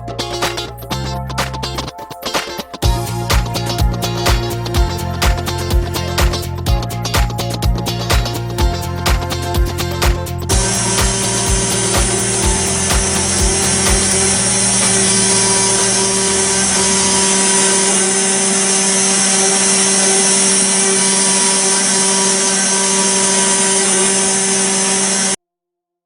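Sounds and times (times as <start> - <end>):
cutter hiss on metal: 10.5 - 25.4
router spindle whine: 10.5 - 25.4.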